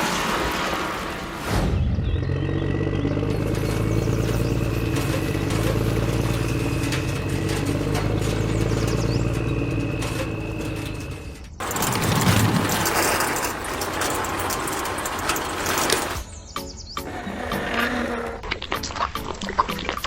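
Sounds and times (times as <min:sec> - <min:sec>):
light clatter: 0:03.3 - 0:16.3.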